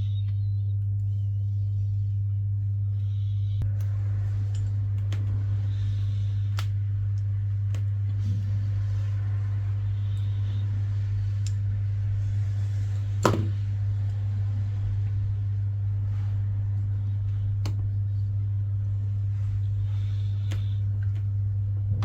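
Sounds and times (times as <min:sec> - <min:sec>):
low electrical hum: 0:00.0 - 0:22.0.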